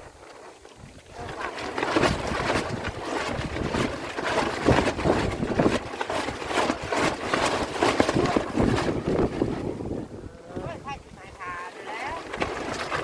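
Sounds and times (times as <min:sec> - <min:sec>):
gusty wind buffeting microphone: 0:00.8 - 0:13.0.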